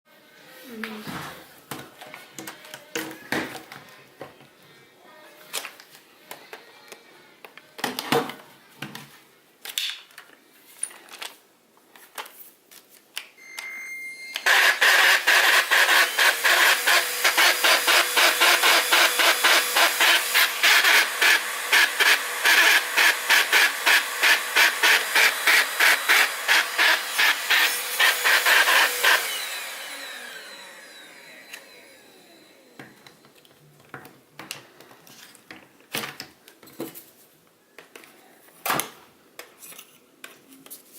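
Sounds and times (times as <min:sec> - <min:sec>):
vacuum cleaner motor rattling: 0:14.4 - 0:33.2.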